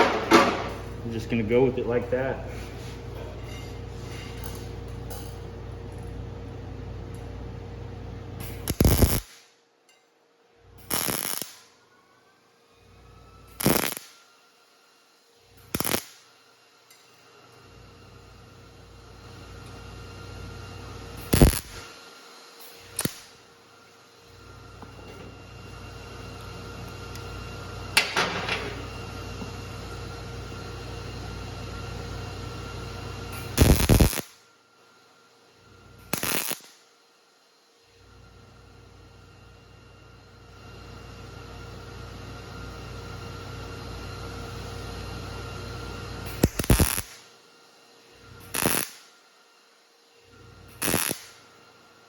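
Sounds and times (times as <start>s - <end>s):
electrical hum: 0.0s - 9.3s, 10.4s - 52.0s
welding crackle: 8.4s - 9.5s, 10.7s - 11.7s, 13.4s - 14.3s, 15.5s - 17.6s, 18.2s - 23.5s, 30.5s - 34.4s, 35.9s - 36.9s, 46.2s - 47.3s, 48.2s - 49.2s, 50.4s - 51.6s.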